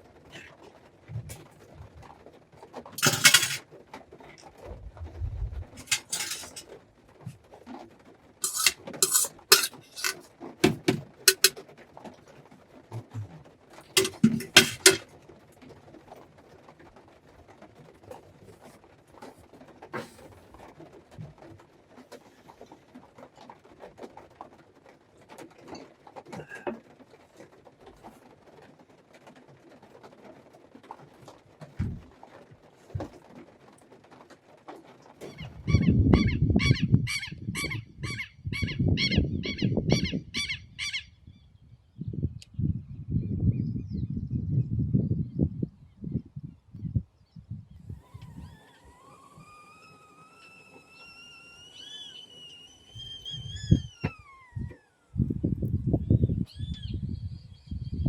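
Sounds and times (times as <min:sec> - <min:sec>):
pots and dishes clattering: 0:03.0 - 0:03.6, 0:05.8 - 0:06.7, 0:08.4 - 0:11.6, 0:13.9 - 0:15.1.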